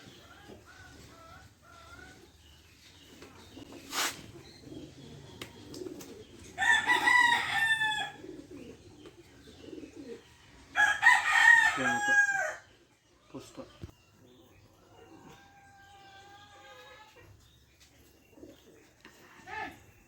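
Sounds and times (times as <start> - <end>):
rooster crowing: 6.6 - 8.2, 10.8 - 12.6
distant rooster calls: 6.6 - 8.3, 10.6 - 12.7.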